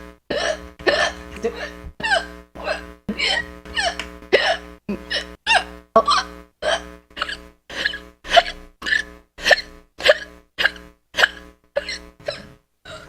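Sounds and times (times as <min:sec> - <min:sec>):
person hiccuping: 0:00.3 - 0:13.0.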